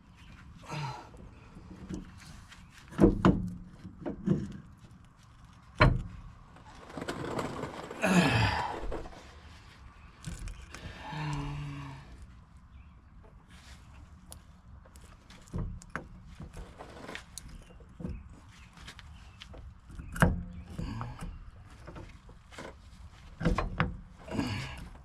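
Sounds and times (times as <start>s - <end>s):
metal rattling and scraping: 1.6s - 9.5s
metal knocks and clunks: 2.9s - 4.7s, 5.8s - 6.3s, 23.3s - 24.2s.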